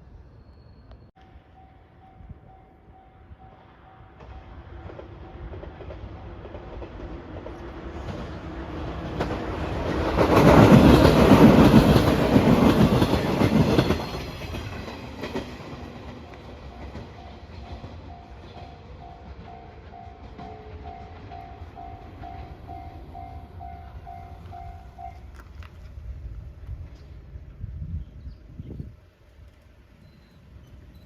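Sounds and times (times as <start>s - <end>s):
train wheels clattering: 4.1s - 25.7s.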